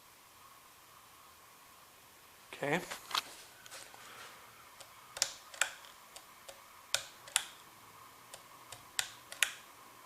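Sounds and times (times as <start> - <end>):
faint steady hum: 0.0 - 10.0
ceiling fan ticking: 4.7 - 9.7.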